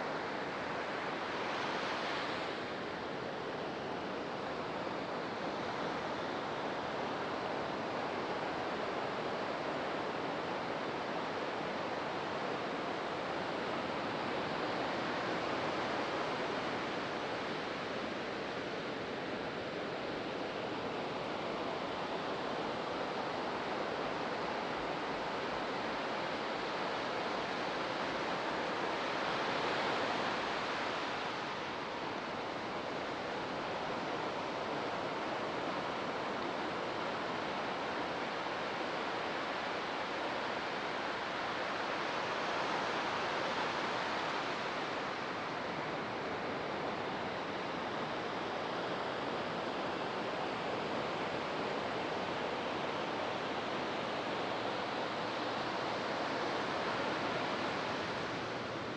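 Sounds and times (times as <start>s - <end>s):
ocean waves breaking on beach: 12.0s - 58.9s.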